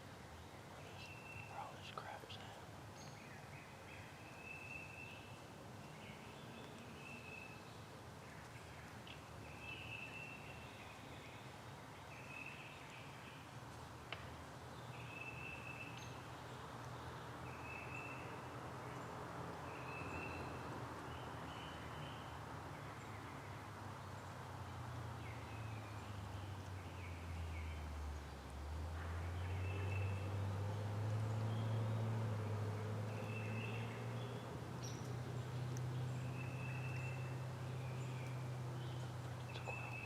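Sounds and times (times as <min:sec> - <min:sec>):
small bird chirping: 0:33.0 - 0:40.0.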